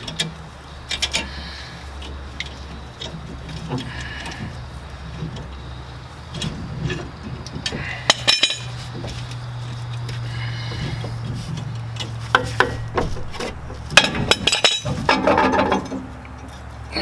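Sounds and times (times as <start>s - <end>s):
metal clanks: 0.0s - 16.7s
steady low hum: 0.0s - 17.0s
hand tools clinking on steel: 6.3s - 16.7s.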